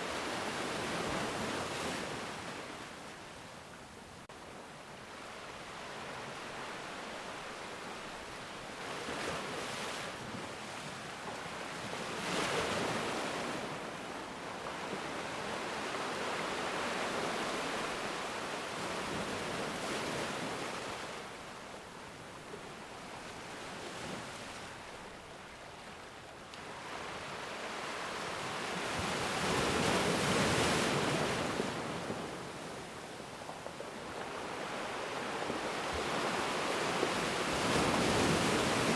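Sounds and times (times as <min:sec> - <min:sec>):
ocean waves breaking: 0:26.6 - 0:38.9.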